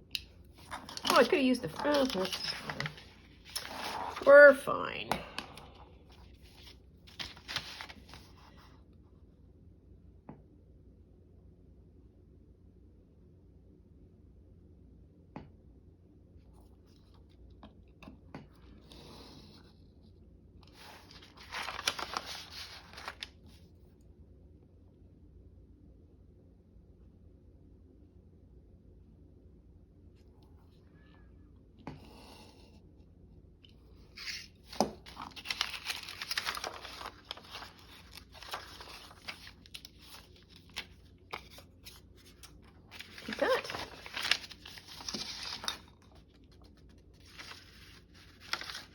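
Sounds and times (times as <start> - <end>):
paper rustling and tearing: 0.6 - 4.5, 6.2 - 8.4, 20.7 - 23.3, 34.1 - 48.9.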